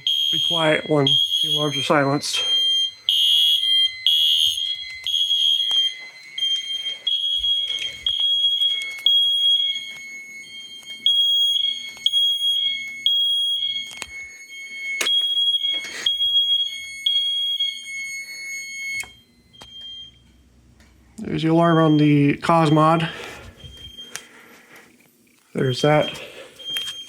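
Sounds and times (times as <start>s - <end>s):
pulsing fire alarm tone: 0.0s - 20.7s, 21.3s - 27.0s.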